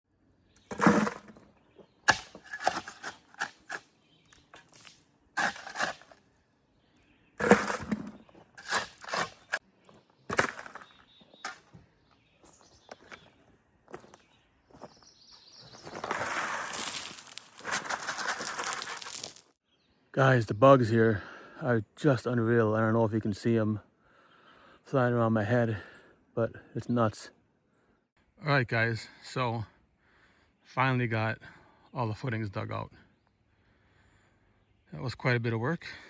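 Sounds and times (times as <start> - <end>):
irregular knocks and scrapes: 0.6 - 1.5, 2.1 - 3.9, 4.5 - 6.2, 7.4 - 9.6, 10.3 - 11.8, 15.9 - 19.3.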